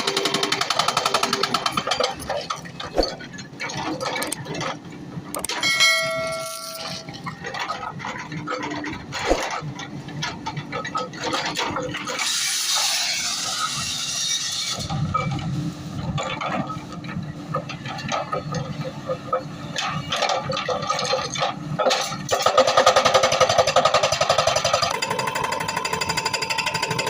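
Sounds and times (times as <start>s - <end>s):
ringing metallic clang: 5.5s - 7.2s.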